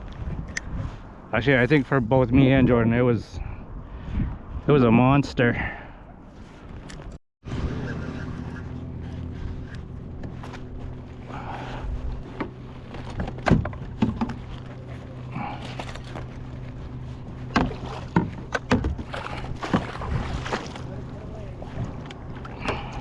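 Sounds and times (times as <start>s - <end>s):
steady low hum: 7.5s - 23.0s.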